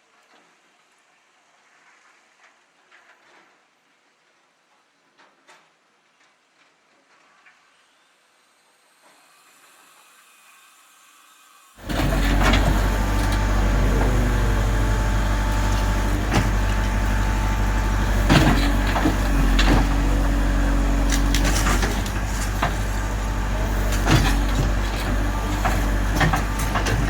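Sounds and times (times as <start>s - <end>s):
diesel engine running: 11.8s - 27.0s
machine knocks and clanks: 11.8s - 27.0s.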